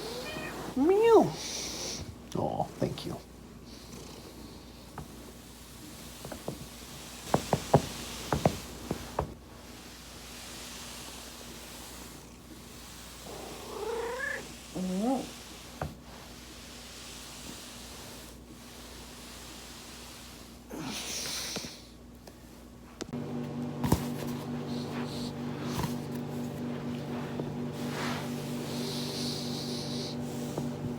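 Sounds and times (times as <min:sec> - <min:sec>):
cat meowing: 0:00.0 - 0:00.8, 0:13.4 - 0:14.4.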